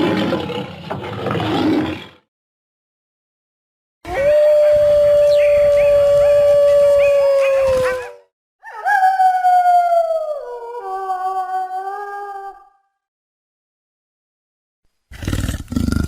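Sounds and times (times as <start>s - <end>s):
lower wolf howl: 4.1s - 12.8s
wolf howling: 4.1s - 12.8s.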